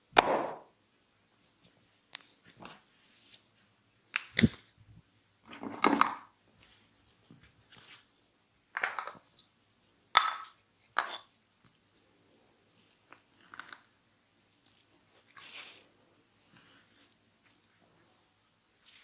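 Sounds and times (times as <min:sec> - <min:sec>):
sharp cracking snaps and pops: 0:04.1 - 0:04.7.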